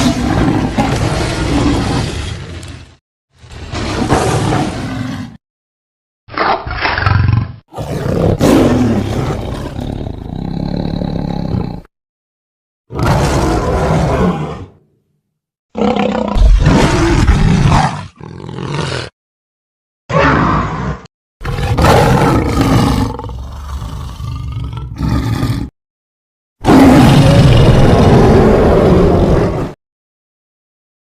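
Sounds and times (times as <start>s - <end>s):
tiger roaring: 6.4s - 11.9s, 12.9s - 14.8s, 15.8s - 19.1s, 20.1s - 25.7s, 26.6s - 29.8s.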